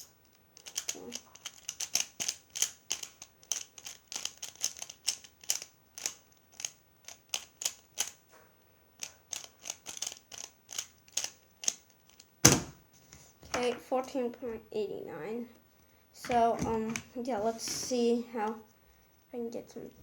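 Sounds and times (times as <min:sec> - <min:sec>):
plastic puzzle clicking: 0:00.2 - 0:08.2, 0:09.0 - 0:12.3.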